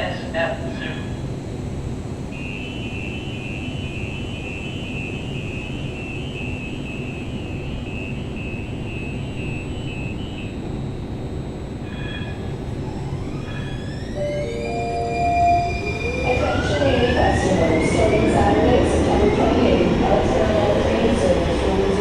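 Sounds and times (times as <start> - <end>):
low train rumble: 0.0 - 22.0
two-pitch warning beep: 2.4 - 10.6, 11.9 - 18.3.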